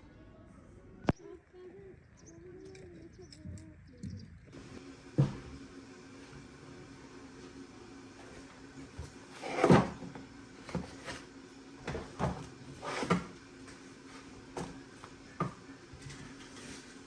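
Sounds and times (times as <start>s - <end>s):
cupboard doors knocking and clunking: 9.0s - 11.2s, 11.8s - 13.4s.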